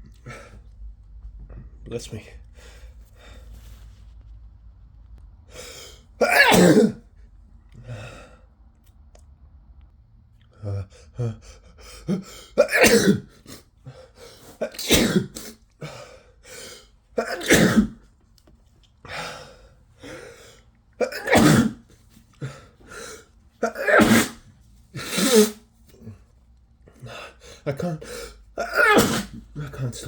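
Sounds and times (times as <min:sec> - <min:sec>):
breathing: 0:02.5 - 0:04.0, 0:07.8 - 0:08.5
man sneezing: 0:06.2 - 0:07.0, 0:12.0 - 0:13.6, 0:14.5 - 0:15.6, 0:17.2 - 0:18.0, 0:21.0 - 0:21.8, 0:22.4 - 0:26.2, 0:27.1 - 0:30.0.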